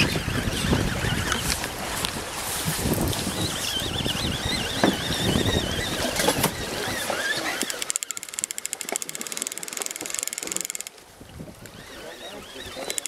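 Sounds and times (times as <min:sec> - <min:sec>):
water noise: 0:00.0 - 0:13.0
wind: 0:00.0 - 0:13.0
fishing reel ratchet clicking: 0:07.4 - 0:11.0, 0:12.8 - 0:13.0.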